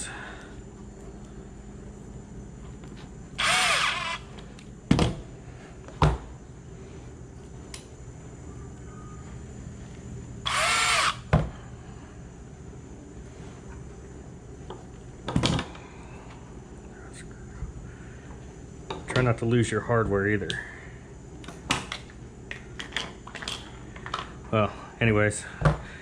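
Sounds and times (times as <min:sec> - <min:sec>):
power drill whirring: 0:03.4 - 0:04.4, 0:10.4 - 0:11.3.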